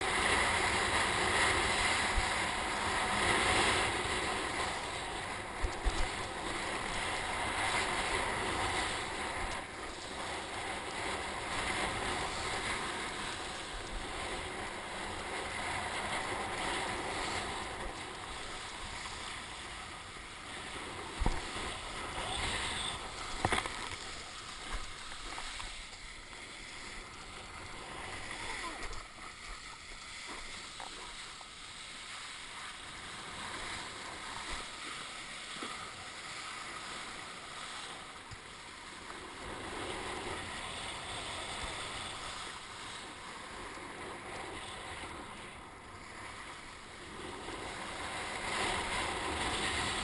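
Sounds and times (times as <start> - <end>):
strong wind: 0.0 - 25.6
surf breaking: 0.0 - 37.5.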